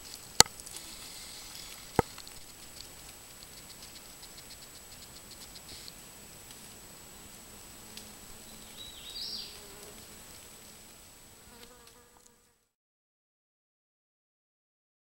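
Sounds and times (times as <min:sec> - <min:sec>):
faint ticks: 0:00.0 - 0:06.7
insects buzzing: 0:00.0 - 0:12.6.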